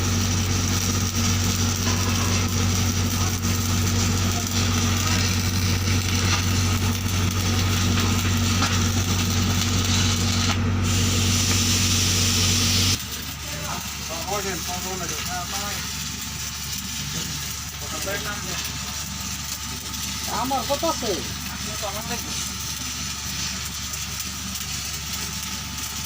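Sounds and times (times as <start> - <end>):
welding arc buzzing and hissing: 0.0 - 26.0.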